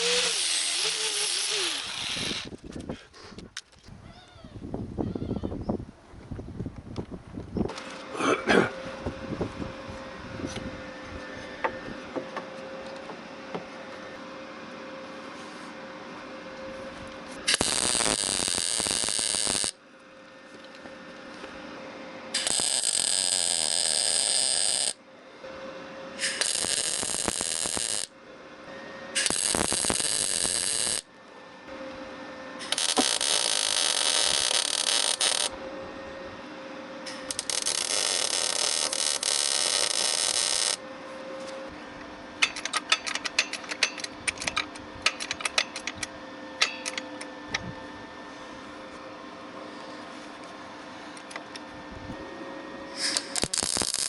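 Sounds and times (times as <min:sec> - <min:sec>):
welding crackling hiss: 0:00.0 - 0:02.5, 0:17.4 - 0:19.8, 0:22.4 - 0:25.0, 0:26.2 - 0:28.1, 0:29.2 - 0:31.1, 0:32.6 - 0:35.5, 0:37.2 - 0:40.8, 0:52.9 - 0:54.0
welder hum: 0:00.0 - 0:03.0, 0:07.7 - 0:54.0
short sharp welding crackles: 0:17.5 - 0:19.8, 0:22.4 - 0:25.0, 0:26.2 - 0:28.1, 0:29.2 - 0:31.0, 0:32.6 - 0:35.5, 0:37.1 - 0:40.8, 0:53.0 - 0:54.0.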